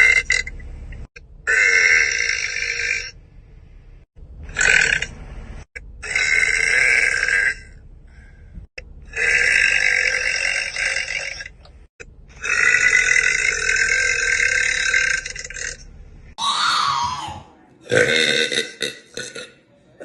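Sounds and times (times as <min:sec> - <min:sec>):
woman burping loudly: 0:17.8 - 0:19.6.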